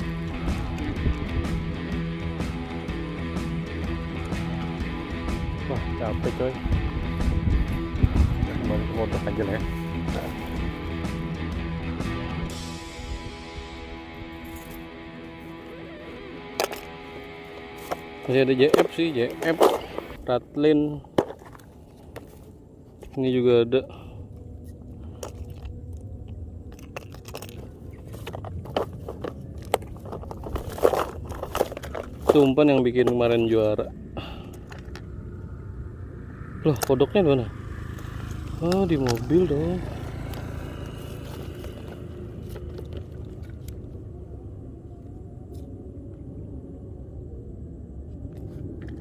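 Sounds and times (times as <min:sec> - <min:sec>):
low steady rumble: 0:00.0 - 0:49.0
fishing tackle clicking and rustling: 0:16.4 - 0:20.2, 0:24.3 - 0:35.3, 0:37.9 - 0:44.0.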